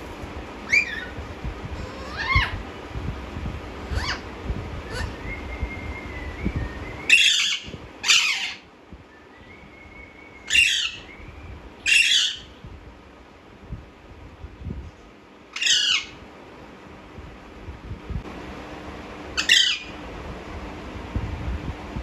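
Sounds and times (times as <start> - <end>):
parakeet screeching: 0.6 - 2.6, 3.8 - 5.4, 7.1 - 8.7, 10.5 - 11.1, 11.8 - 12.6, 15.5 - 16.2, 19.4 - 20.0.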